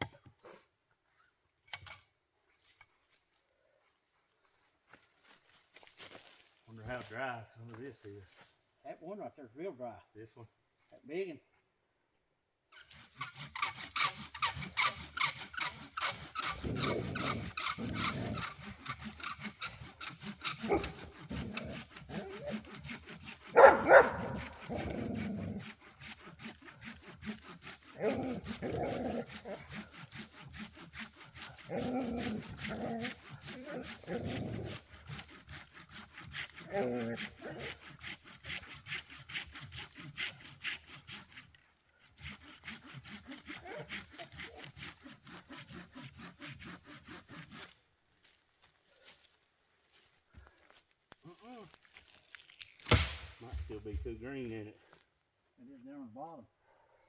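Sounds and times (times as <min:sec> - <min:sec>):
hand saw cutting log: 0:12.7 - 0:49.3, 0:51.4 - 0:55.0.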